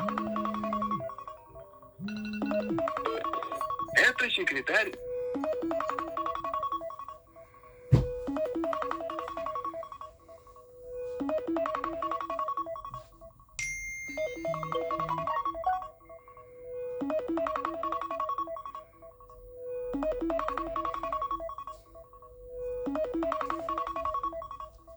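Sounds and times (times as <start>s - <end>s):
phone ringtone melody: 0.0s - 19.0s
thin steady high tone: 13.6s - 16.5s.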